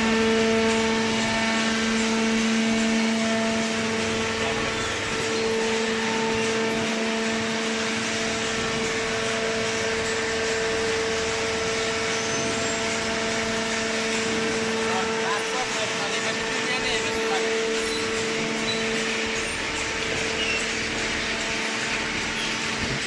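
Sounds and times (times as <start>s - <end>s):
hydraulic pump humming: 0.0s - 23.0s.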